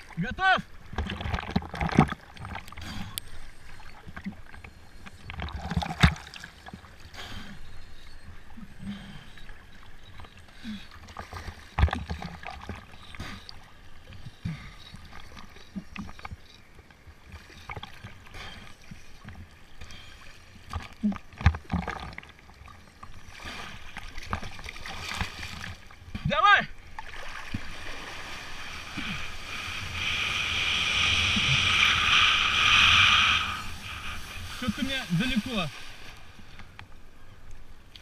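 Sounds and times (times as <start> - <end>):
water splashing and sloshing: 0.0 - 7.4, 8.2 - 32.1, 33.6 - 38.0.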